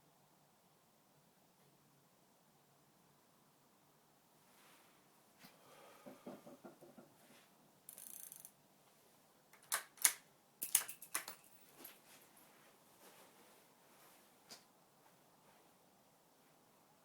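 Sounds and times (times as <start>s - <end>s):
small clicks: 7.9s - 8.6s, 9.6s - 11.4s.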